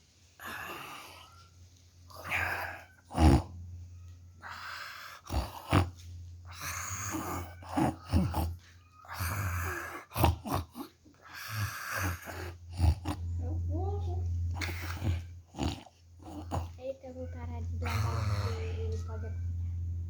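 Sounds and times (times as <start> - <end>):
person snoring: 0.4 - 1.3, 2.1 - 3.6, 4.4 - 13.3, 14.6 - 16.8, 17.8 - 18.8.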